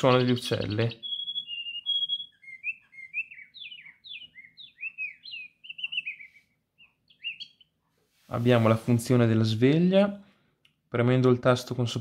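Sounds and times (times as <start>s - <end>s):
recorded birdsong through speaker: 0.0s - 12.0s.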